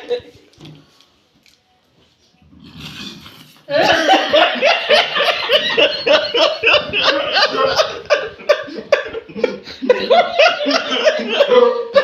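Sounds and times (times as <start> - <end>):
person laughing hard: 3.7 - 12.0.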